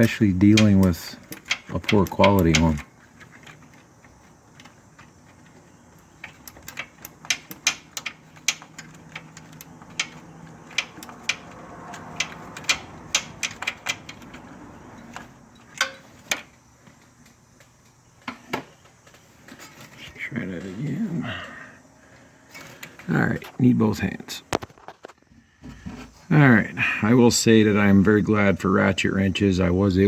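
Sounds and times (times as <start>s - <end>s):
ratchet wrench clicking: 0.0s - 3.8s, 6.0s - 16.5s.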